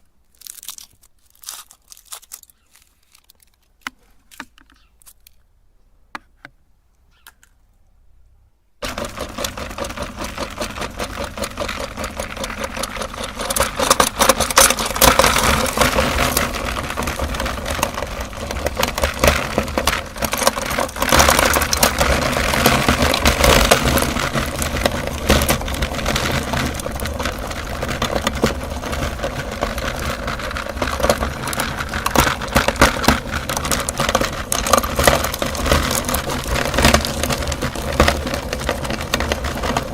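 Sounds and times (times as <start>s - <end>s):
crunching of candies being ground: 0.0s - 5.5s, 8.8s - 39.9s
electric meat grinder motor humming: 8.8s - 39.9s.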